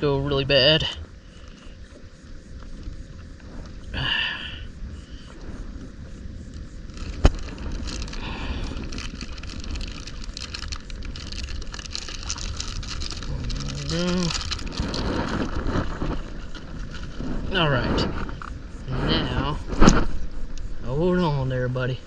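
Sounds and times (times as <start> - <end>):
crackling and rustling: 0.0 - 3.9, 4.8 - 22.0
person humming: 13.3 - 14.4.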